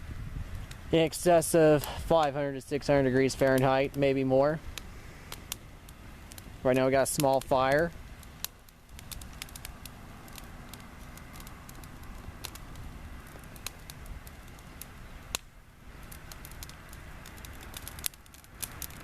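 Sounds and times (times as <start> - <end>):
fire crackling and popping: 0.0 - 19.0
low rushing fire noise: 0.0 - 19.0.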